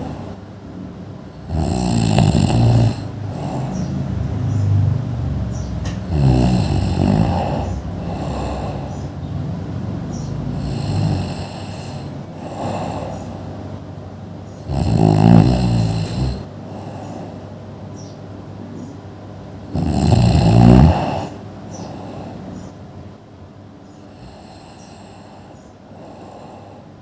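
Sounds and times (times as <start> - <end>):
loud snoring: 0.0 - 0.4, 1.3 - 9.4, 10.0 - 13.4, 14.6 - 17.4, 19.6 - 22.4, 24.1 - 26.8
quiet breathing: 0.0 - 0.6, 1.3 - 18.9, 19.6 - 22.9, 23.8 - 27.0.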